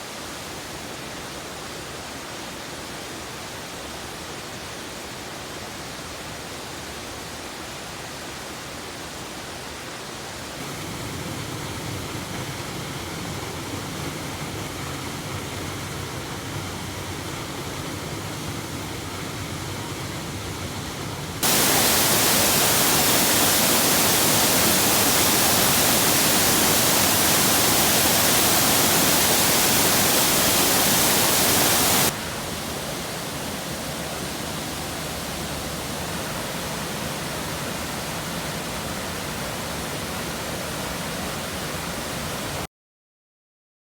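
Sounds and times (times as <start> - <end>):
waterfall rushing: 21.4 - 42.6.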